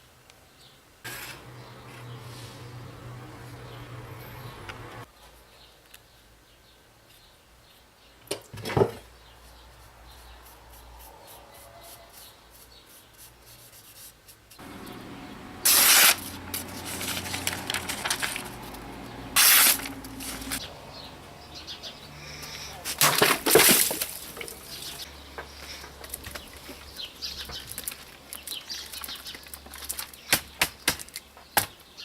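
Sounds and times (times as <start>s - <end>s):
hissing spray: 15.6s - 16.4s, 19.4s - 20.6s
rubbing and handling noises: 15.7s - 20.6s.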